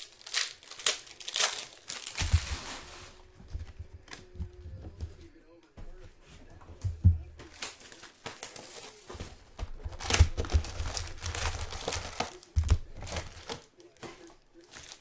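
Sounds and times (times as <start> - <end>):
plastic wrapping crinkling and tearing: 0.0 - 4.4, 7.4 - 15.0
dull handling knocks: 2.2 - 7.6.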